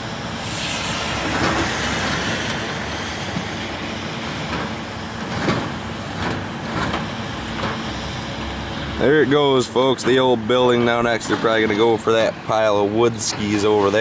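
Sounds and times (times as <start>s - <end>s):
heavy demolition machinery running: 0.0s - 14.0s
metal knocks and clanks: 4.4s - 8.6s.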